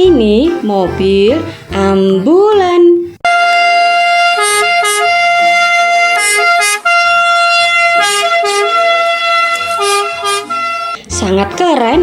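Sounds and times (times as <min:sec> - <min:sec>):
electronic ambulance siren: 0:03.2 - 0:11.0.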